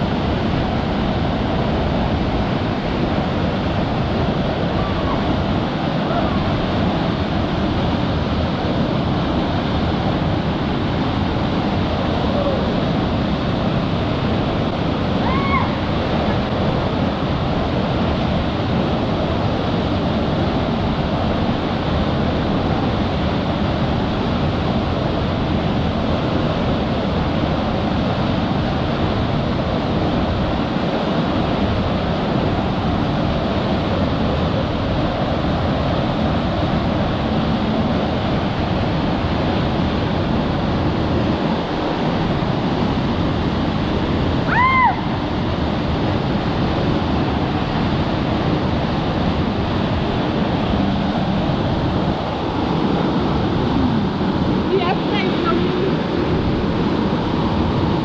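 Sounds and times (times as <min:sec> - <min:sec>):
rushing water roar: 0:00.0 - 0:58.0.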